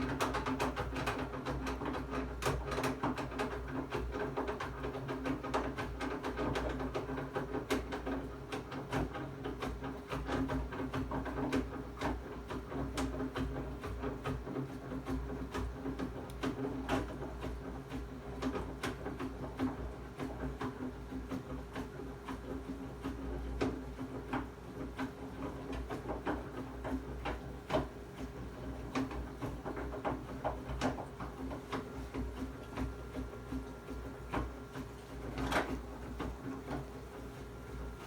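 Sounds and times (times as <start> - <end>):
gas boiler humming: 25.9 - 38.0.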